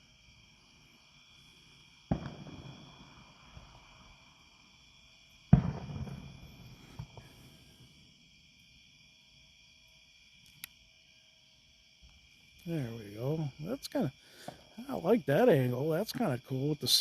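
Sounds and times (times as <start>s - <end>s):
crickets trilling: 0.0s - 17.0s
distant fireworks booming: 1.8s - 4.8s, 5.4s - 7.8s
faint fireworks pops: 2.1s - 4.0s, 5.5s - 7.5s, 14.4s - 14.8s.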